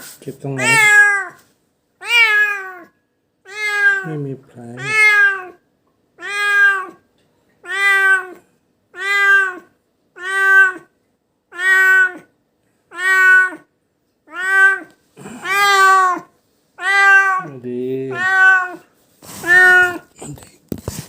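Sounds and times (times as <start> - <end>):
cat meowing: 0.6 - 1.4, 2.0 - 4.2, 4.8 - 5.6, 6.2 - 7.0, 7.6 - 10.9, 11.5 - 12.3, 12.9 - 13.7, 14.3 - 20.4.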